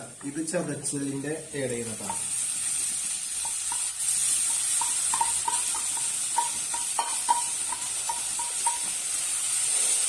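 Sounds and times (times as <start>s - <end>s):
onions sizzling in a frying pan: 0.0s - 10.0s
utensil clinking against pan: 4.5s - 9.0s.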